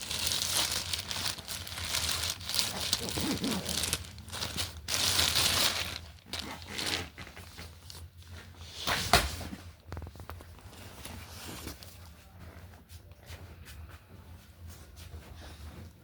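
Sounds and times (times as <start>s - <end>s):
plastic packaging rustling and tearing: 0.0s - 8.2s.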